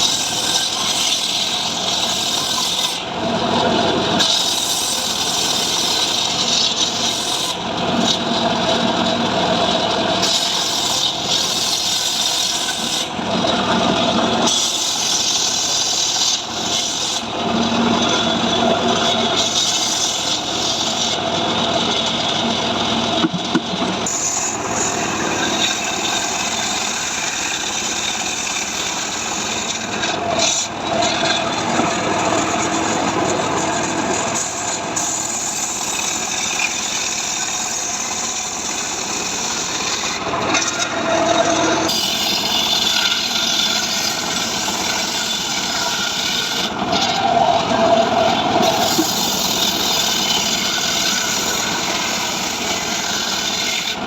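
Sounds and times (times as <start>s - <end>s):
chainsaw cutting wood: 41.9s - 47.2s, 48.4s - 54.0s.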